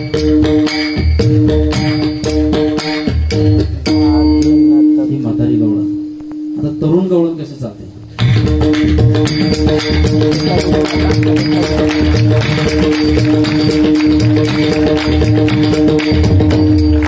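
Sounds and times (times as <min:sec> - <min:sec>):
held accompanying drone note: 0:08.9 - 0:17.0.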